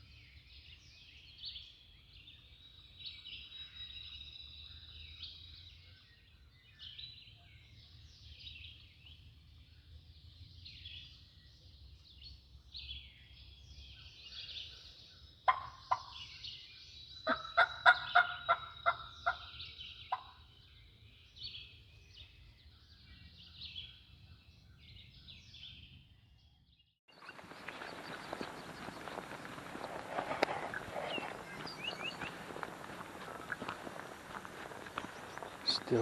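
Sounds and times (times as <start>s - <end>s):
songbirds chorus: 0.0s - 26.4s, 27.1s - 36.0s
wild turkey calling: 15.5s - 16.4s, 17.2s - 20.4s, 27.2s - 36.0s
rustling: 27.2s - 36.0s.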